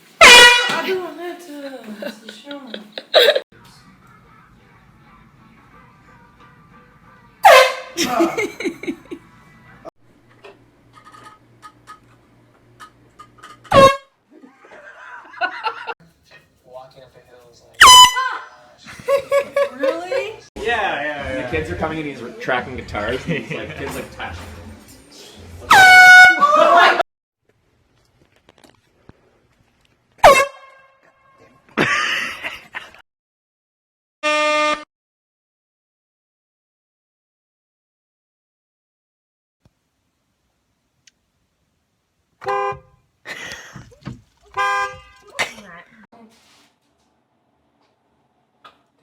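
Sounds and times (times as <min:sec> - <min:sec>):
air horn blast: 0:00.2 - 0:00.8, 0:07.4 - 0:08.0, 0:13.7 - 0:14.1, 0:17.8 - 0:18.3, 0:25.7 - 0:26.5, 0:30.2 - 0:31.0, 0:34.2 - 0:34.9
loud yelp: 0:17.8 - 0:18.7, 0:25.7 - 0:27.0.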